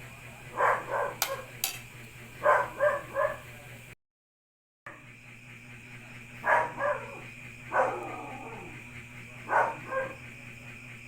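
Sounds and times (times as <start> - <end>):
low background hum: 0.0 - 4.0, 4.9 - 11.0
dog barking: 0.5 - 1.5, 2.4 - 3.5, 6.4 - 8.7, 9.4 - 10.3.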